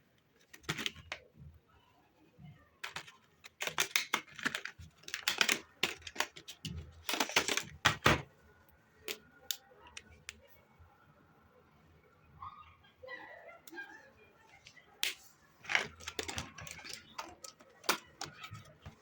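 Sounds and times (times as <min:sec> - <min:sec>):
clicks and taps of handling: 0:14.6 - 0:19.0.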